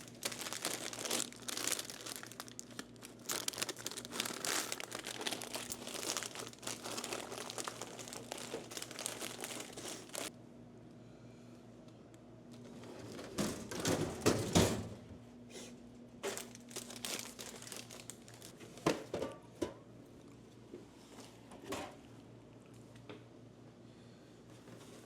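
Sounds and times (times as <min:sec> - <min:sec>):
plastic snack bags crinkling: 0:00.0 - 0:10.3, 0:16.2 - 0:18.6.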